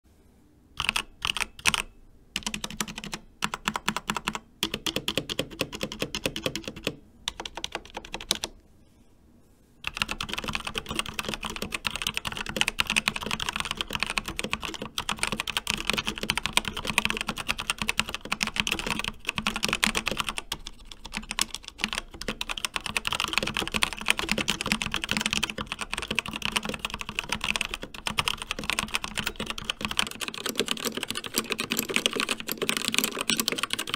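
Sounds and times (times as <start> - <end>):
mechanical keyboard typing: 0.8 - 8.6, 9.8 - 33.9.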